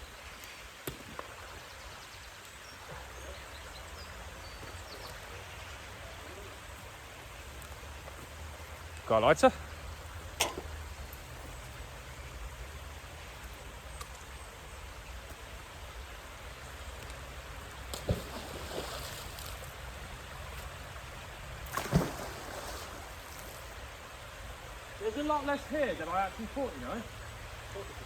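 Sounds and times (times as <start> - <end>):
splashy rush of water: 15.7 - 27.8.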